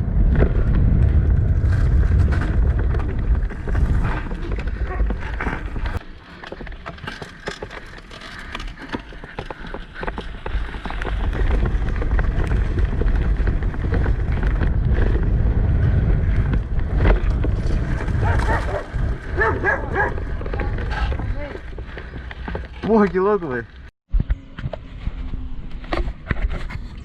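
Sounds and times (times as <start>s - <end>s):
wind buffeting microphone: 0.0s - 6.0s, 9.8s - 22.8s
bike rattles and knocks: 0.2s - 27.0s.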